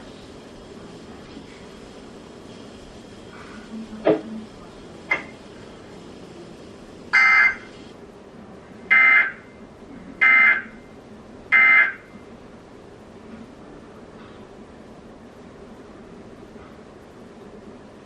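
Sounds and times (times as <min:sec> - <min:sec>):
electronic data screeches: 0:07.2 - 0:07.7.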